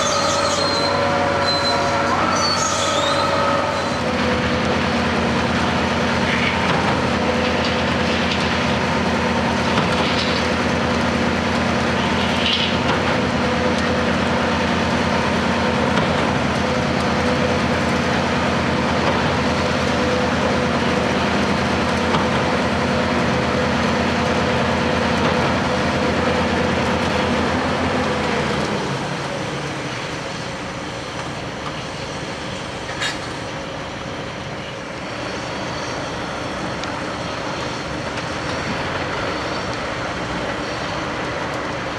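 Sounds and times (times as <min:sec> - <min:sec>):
short high squeaks: 0:00.0 - 0:04.0
heavy machinery diesel engine: 0:00.0 - 0:41.9.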